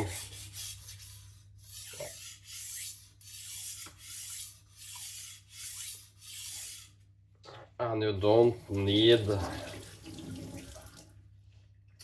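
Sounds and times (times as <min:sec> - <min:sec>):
knife scraping on sharpening plate: 0:01.7 - 0:06.9.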